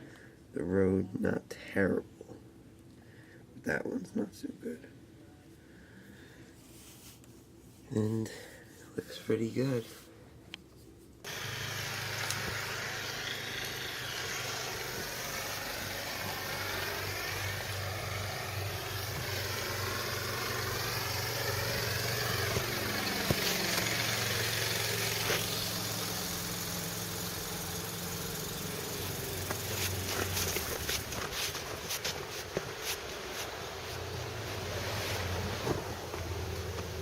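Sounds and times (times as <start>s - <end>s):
rushing hiss: 11.3s - 36.7s
engine humming: 11.3s - 37.0s.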